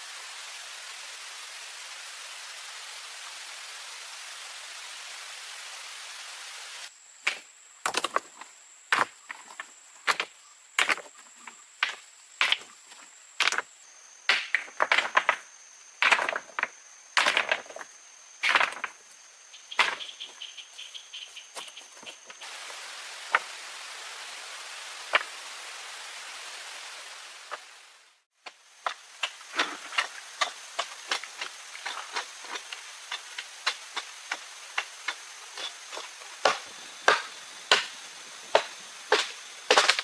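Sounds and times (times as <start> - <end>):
water rushing: 0.0 - 6.9, 22.4 - 28.3
high insect trill: 0.0 - 40.0
blade chopping into wood: 28.9 - 38.0, 38.6 - 40.0.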